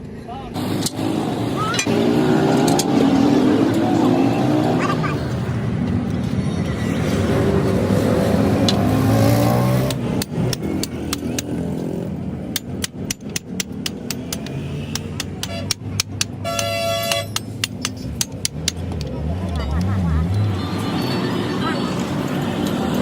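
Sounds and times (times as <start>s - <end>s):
vehicle engine rising: 0.6s - 12.5s, 17.3s - 23.0s
sharp irregular knocks: 12.5s - 19.1s.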